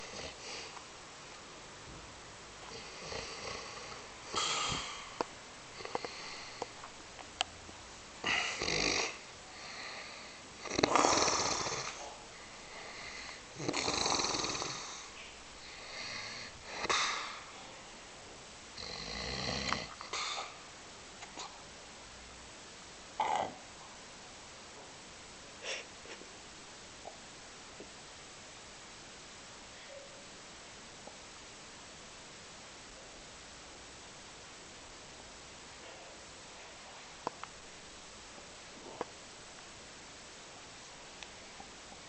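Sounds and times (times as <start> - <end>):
man snoring loudly: 2.7 - 5.0, 8.2 - 10.0, 10.6 - 12.0, 13.6 - 15.1, 18.8 - 20.1.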